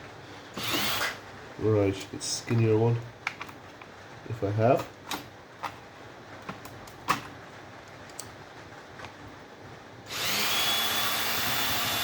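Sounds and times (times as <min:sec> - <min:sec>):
power drill running: 0:00.5 - 0:01.2, 0:10.1 - 0:12.0
handling clicks and knocks: 0:02.0 - 0:04.0, 0:04.6 - 0:09.2.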